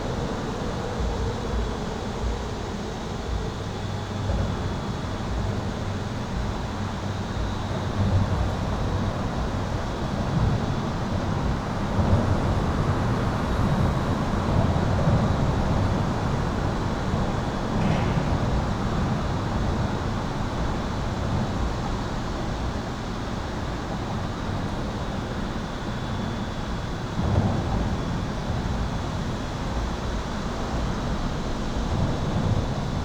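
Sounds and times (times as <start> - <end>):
highway traffic rumble: 7.5 - 20.9.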